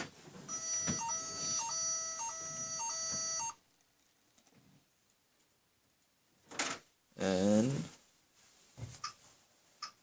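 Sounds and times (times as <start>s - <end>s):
two-note electronic alarm beeping: 0.5s - 3.6s.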